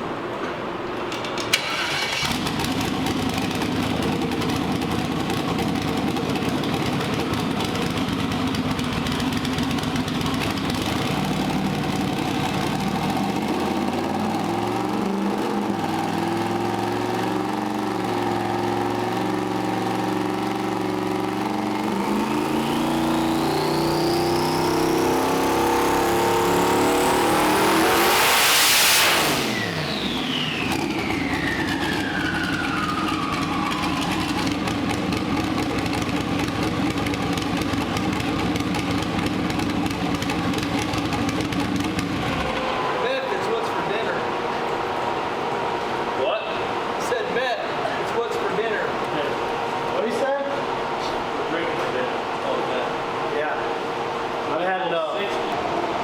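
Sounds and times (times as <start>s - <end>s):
car engine revving on dyno: 2.2s - 56.0s
turbo whistle: 28.5s - 34.6s.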